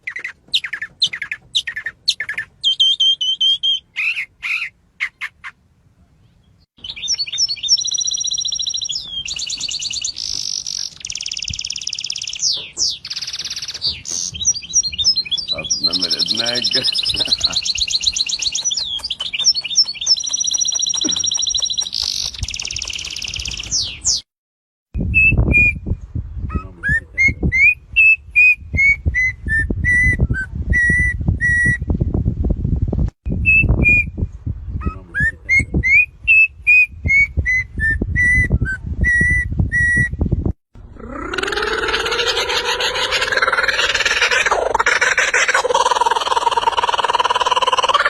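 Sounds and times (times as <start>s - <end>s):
songbirds trilling: 0.0s - 24.2s, 40.9s - 48.0s
bird whistled notes: 6.8s - 24.2s.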